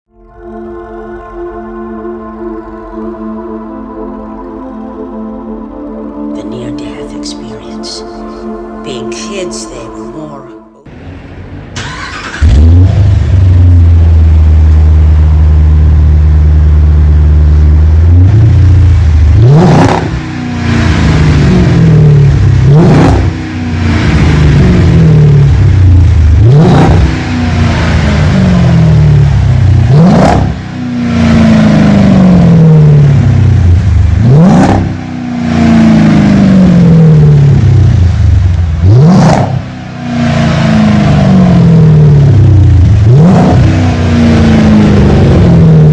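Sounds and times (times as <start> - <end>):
car engine idling: 10.9 - 45.9
car engine revving: 10.9 - 45.9.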